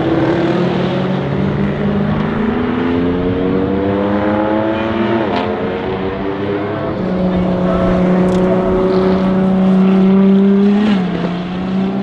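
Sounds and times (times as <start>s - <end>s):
engine accelerating hard: 0.0s - 12.0s
exhaust crack at gear shift: 6.7s - 10.4s.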